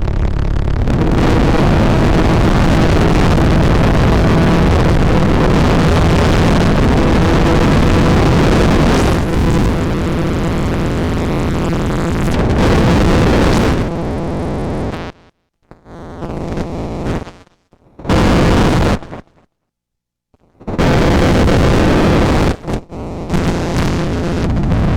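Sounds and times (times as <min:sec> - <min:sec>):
noisy roar from delay module: 0:00.0 - 0:14.0.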